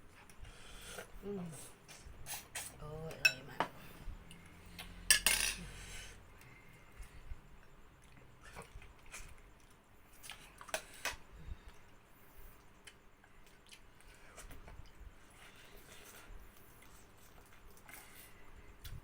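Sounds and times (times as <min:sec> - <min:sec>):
soft chewing: 0:03.8 - 0:05.0, 0:06.2 - 0:19.0.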